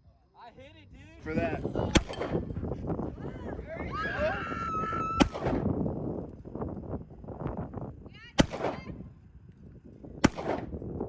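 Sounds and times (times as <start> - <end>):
gunshots with ringing tail: 1.9 - 2.6, 5.2 - 5.7, 8.4 - 9.0, 10.2 - 10.8.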